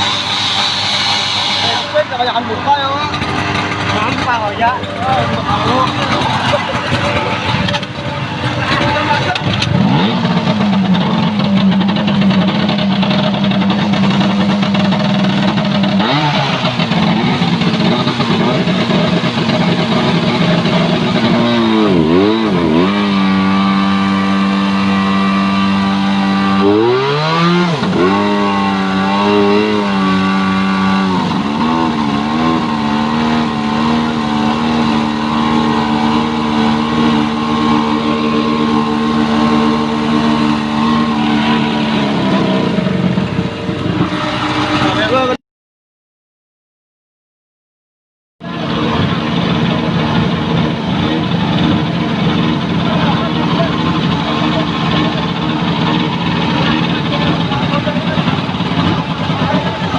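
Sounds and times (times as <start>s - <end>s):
fire pump engine running: 0.0s - 45.4s, 48.4s - 59.9s.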